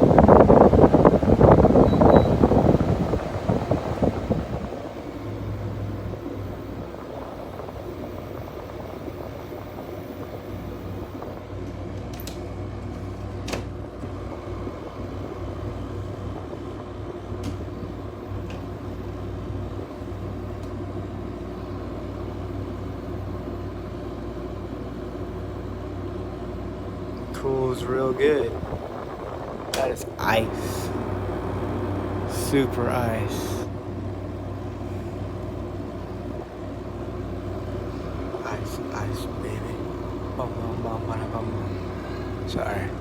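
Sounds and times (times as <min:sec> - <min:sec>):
air conditioner compressor humming: 0:00.0 - 0:43.0
fan blowing: 0:00.0 - 0:43.0.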